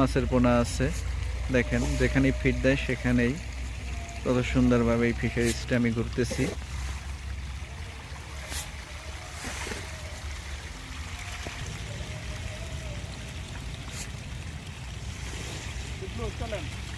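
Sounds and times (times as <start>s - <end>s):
pond water splashing: 0.0s - 16.9s.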